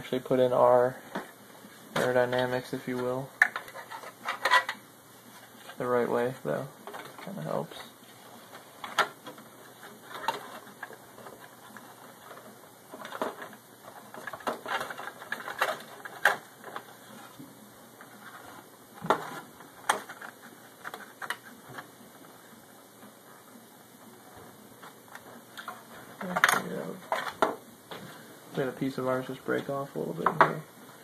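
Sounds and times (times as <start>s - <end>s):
hard plastic parts clicking: 3.4s - 4.8s, 8.8s - 16.9s, 18.3s - 21.9s.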